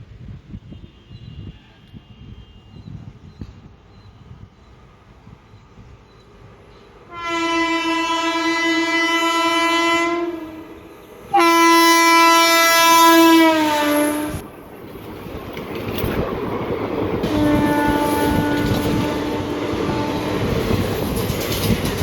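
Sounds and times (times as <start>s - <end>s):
train rushing past: 4.7s - 22.0s
locomotive horn blasts: 7.1s - 14.5s, 17.2s - 21.0s.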